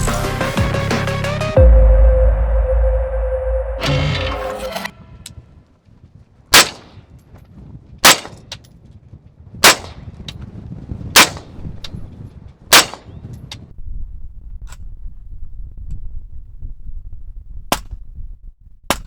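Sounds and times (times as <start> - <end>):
suppressed gunshots: 6.5 - 7.0, 8.0 - 8.6, 9.6 - 10.0, 11.2 - 11.8, 12.7 - 13.2.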